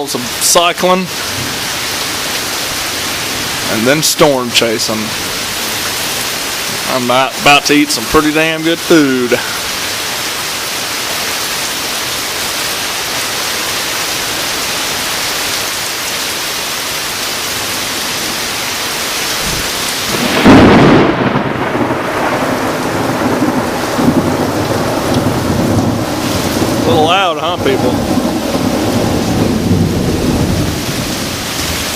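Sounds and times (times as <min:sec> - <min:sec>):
heavy rain pouring: 0:00.0 - 0:31.9
thunderclap rumbling: 0:19.2 - 0:31.9.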